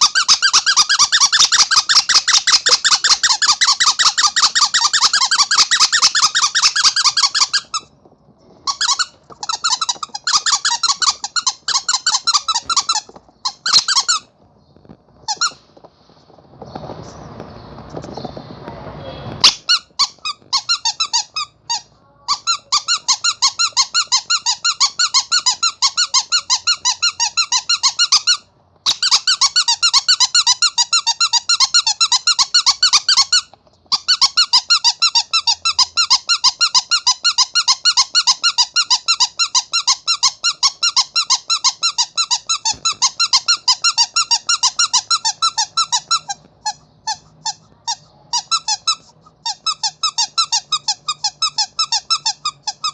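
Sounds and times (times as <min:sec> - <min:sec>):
squeaky toy squeaking: 0:00.0 - 0:15.8, 0:19.3 - 0:52.9
noisy rustle: 0:12.7 - 0:20.6.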